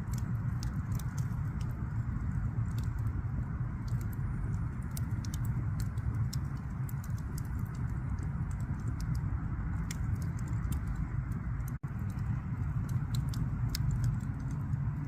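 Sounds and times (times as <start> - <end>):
fire snaps and pops: 0.0 - 15.0
low rumble of flames: 0.0 - 15.0.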